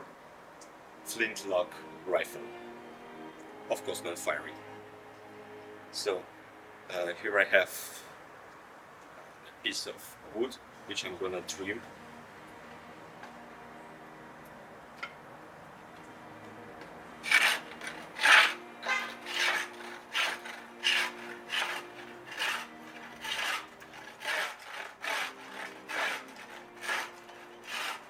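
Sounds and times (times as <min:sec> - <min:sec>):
abrasive tool rubbing wood: 0:17.2 - 0:28.0.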